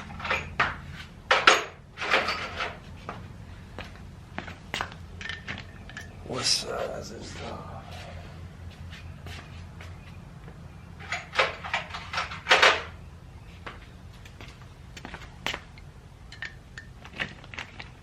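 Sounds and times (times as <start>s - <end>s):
hand tools clattering and clinking: 0.0s - 2.8s, 4.4s - 7.0s, 11.0s - 12.9s, 15.0s - 18.0s
steady low hum: 0.0s - 18.0s.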